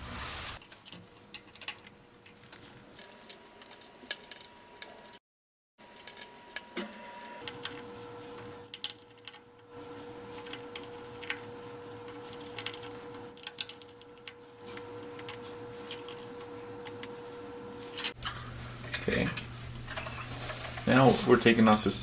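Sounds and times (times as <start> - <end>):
steady electrical hum: 5.8 - 22.0.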